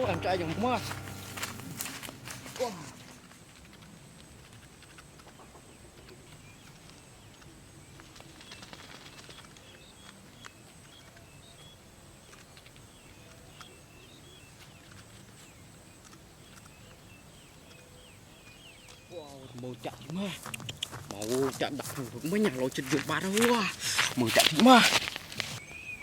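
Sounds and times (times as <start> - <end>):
faint outdoor ambience: 0.0 - 26.0
bird chirps: 8.4 - 21.0, 25.6 - 26.0.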